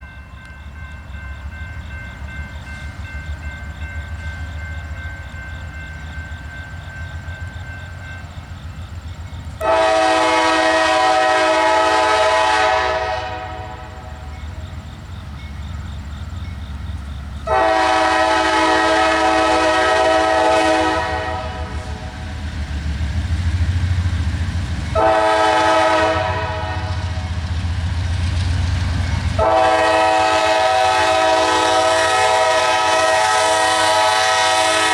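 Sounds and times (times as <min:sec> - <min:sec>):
locomotive rumbling: 0:00.0 - 0:34.9
train horn blasts: 0:09.6 - 0:14.2, 0:17.4 - 0:22.3, 0:24.8 - 0:27.4, 0:29.2 - 0:34.9.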